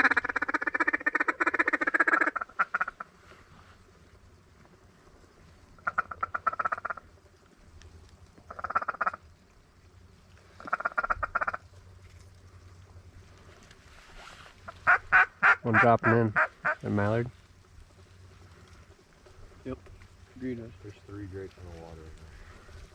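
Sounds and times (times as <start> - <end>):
duck clucking: 0.0 - 3.1.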